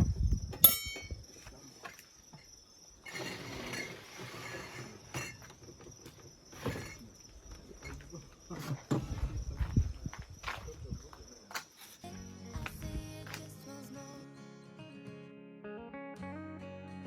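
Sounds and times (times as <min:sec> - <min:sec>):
crickets chirring: 0:00.0 - 0:14.4
tableware clink: 0:00.6 - 0:01.3.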